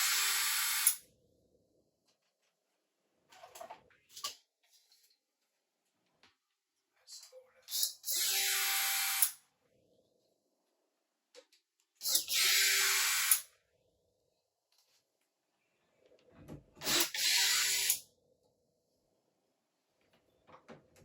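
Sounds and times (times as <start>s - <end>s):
cordless drill driving screws: 16.8s - 18.0s.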